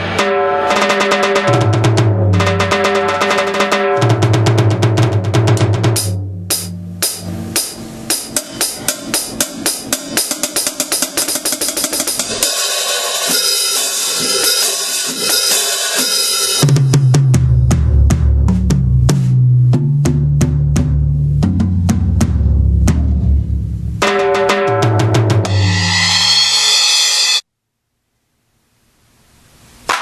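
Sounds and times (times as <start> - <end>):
cymbals ringing: 0.0 - 4.3, 6.0 - 16.6, 24.0 - 27.4
snare and tom strokes: 0.0 - 27.4, 29.8 - 30.0
low synth tone: 25.4 - 27.4.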